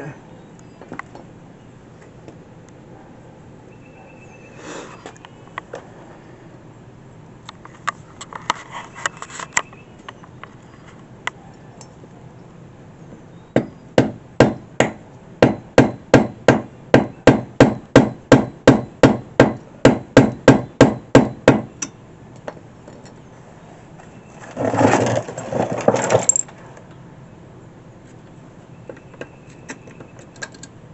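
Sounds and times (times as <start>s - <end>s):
hammer striking: 13.6s - 22.0s.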